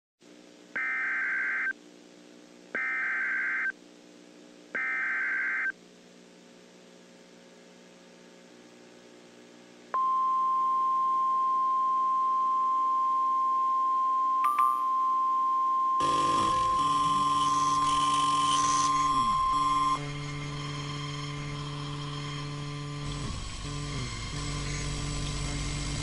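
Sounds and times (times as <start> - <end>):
buzzy data bursts: 16.0 - 24.8.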